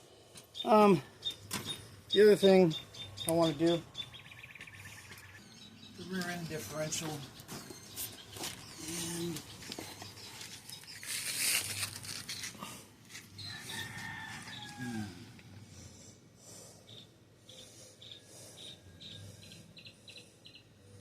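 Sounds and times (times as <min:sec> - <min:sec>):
rooster crowing: 0:13.4 - 0:15.3.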